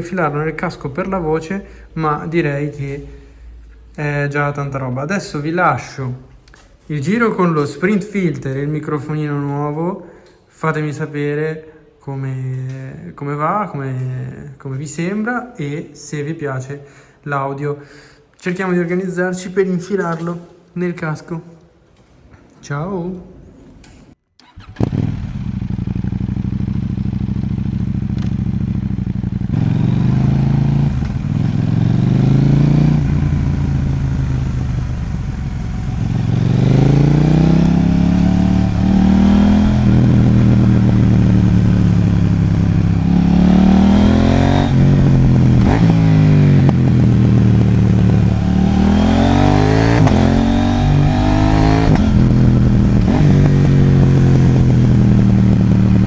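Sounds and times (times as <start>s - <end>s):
motorcycle engine accelerating: 24.4s - 56.0s.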